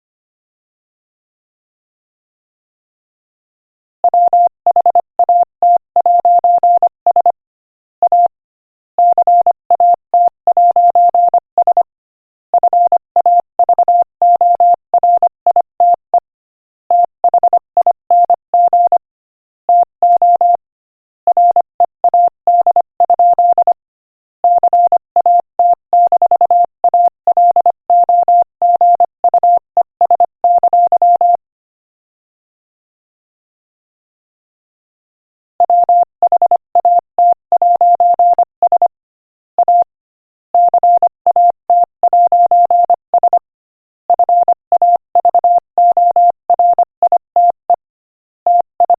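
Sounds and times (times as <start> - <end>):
morse code beep: 4.1 - 7.3, 8.0 - 8.3, 9.0 - 11.9, 12.6 - 16.2, 16.9 - 19.0, 19.7 - 20.6, 21.3 - 23.8, 24.5 - 31.4, 35.6 - 38.9, 39.6 - 39.9, 40.6 - 43.5, 44.1 - 47.8, 48.5 - 48.9.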